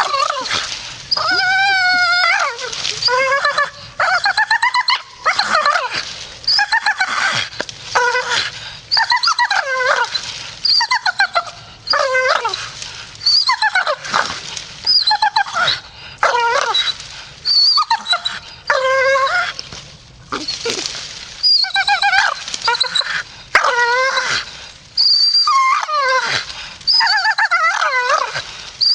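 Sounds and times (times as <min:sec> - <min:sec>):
dog grumbling and whining: 0:00.0 - 0:07.4.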